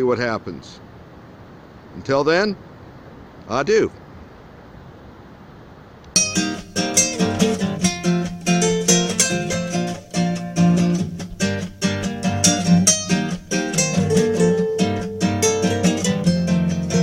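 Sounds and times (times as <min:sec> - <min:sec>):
acoustic guitar music: 0:06.1 - 0:17.0.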